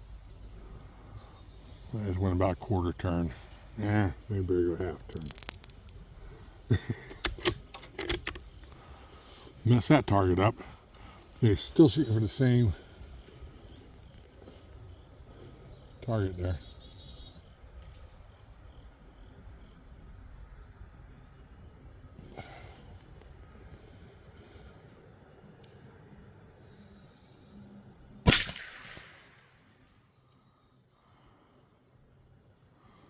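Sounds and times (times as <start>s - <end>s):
crickets chirping: 0.0s - 33.0s
rifle shot: 28.3s - 29.8s.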